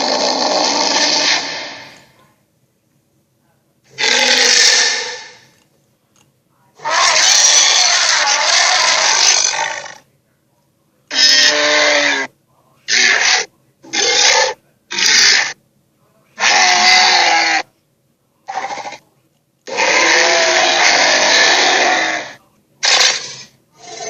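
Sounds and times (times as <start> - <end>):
dinosaur growls and roars: 0.0 - 2.0, 4.0 - 5.4, 19.7 - 24.0.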